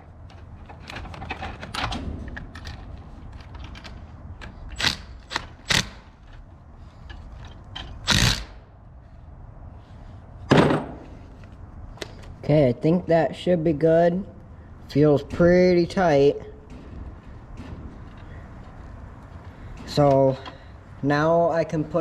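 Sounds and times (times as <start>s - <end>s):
wrench clicking and clacking: 3.4s - 6.0s, 7.1s - 8.6s
sharp metal knocks: 10.5s - 11.1s.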